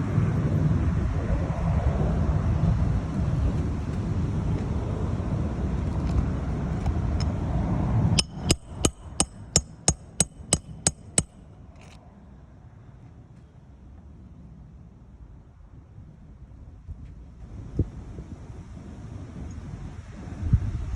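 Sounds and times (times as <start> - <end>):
ringing metallic strikes: 8.2 - 11.4.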